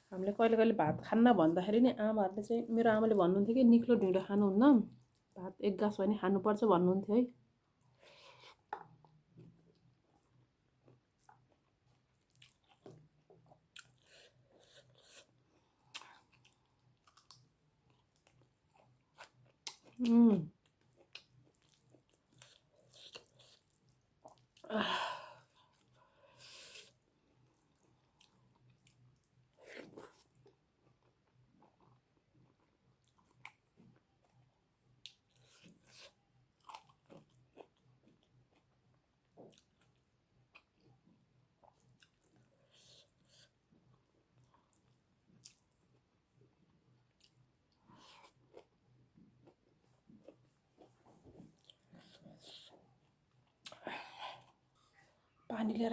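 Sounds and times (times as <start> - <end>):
person chewing: 8.2 - 24.6, 25.6 - 41.0, 47.0 - 55.0.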